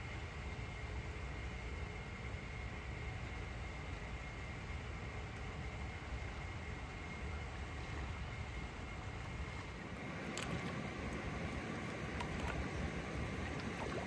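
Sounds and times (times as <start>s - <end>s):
river water flowing: 9.8s - 14.0s.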